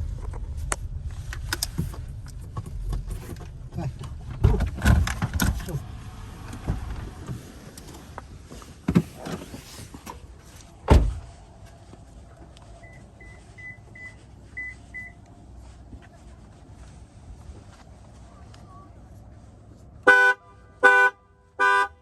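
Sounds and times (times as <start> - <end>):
car door slam: 10.8 - 11.3
car electronic chime beeps: 12.8 - 15.2.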